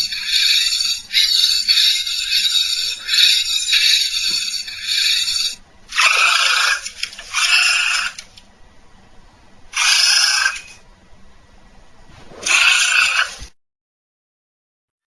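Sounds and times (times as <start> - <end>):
harsh breathy screeching calls: 0.0 - 8.3, 9.8 - 10.8, 12.4 - 13.4.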